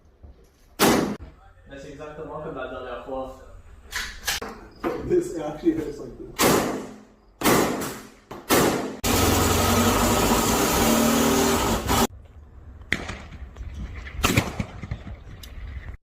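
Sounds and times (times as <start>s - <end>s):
rifle shots: 6.4s - 9.0s, 14.2s - 15.1s.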